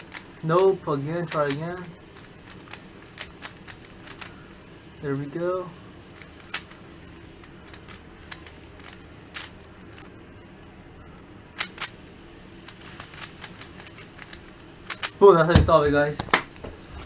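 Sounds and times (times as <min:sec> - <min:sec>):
plastic puzzle cube clicking: 0:02.2 - 0:04.3, 0:06.2 - 0:06.8, 0:07.7 - 0:10.1.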